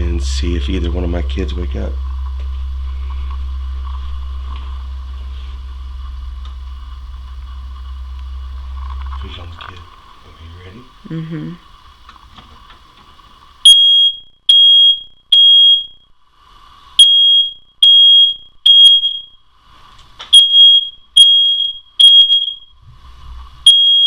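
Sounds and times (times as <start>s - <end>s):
smoke detector alarm beeping: 13.6s - 16.1s, 17.0s - 19.4s, 20.3s - 22.8s, 23.6s - 24.0s.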